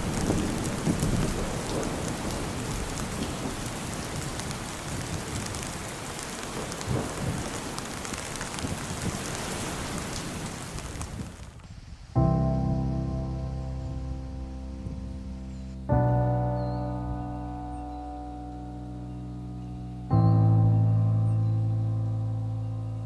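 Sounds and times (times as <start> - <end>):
raindrops ticking on a surface: 0.0 - 11.7
heavy rain: 0.0 - 16.2.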